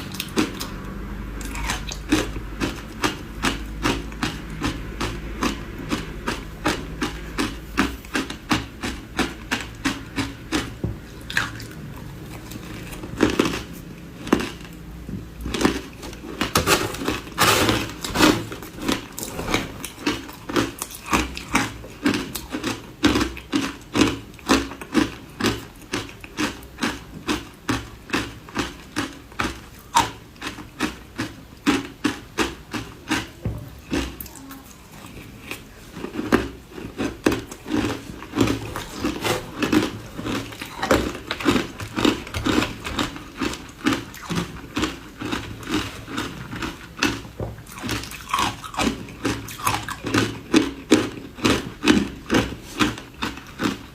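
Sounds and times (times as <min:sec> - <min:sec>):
ice crunching while chewed: 0:00.0 - 0:53.9.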